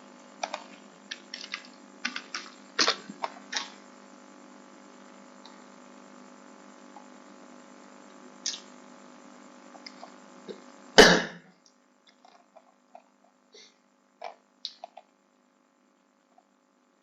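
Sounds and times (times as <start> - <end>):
steady background hum: 0.0 - 17.0
person clearing throat: 11.0 - 11.4.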